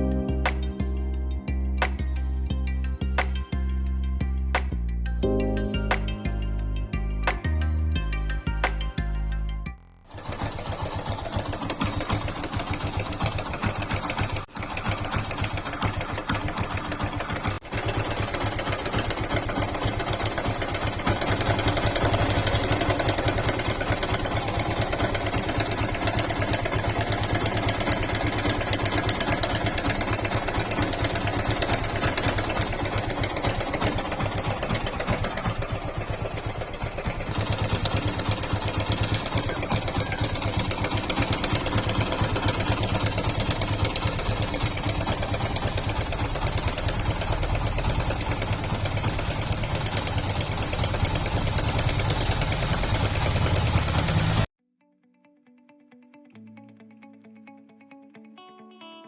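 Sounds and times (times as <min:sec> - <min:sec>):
motorcycle engine idling with ticking: 0:10.0 - 0:54.5.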